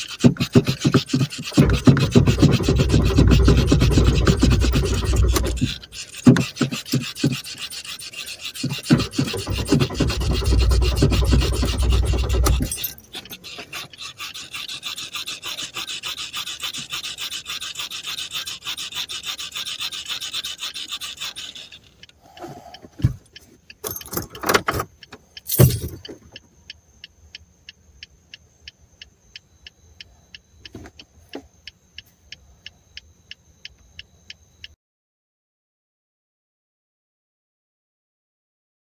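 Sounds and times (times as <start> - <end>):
car engine cranking: 0.0 - 16.5, 23.2 - 26.4
quiet even ticking: 0.0 - 34.8.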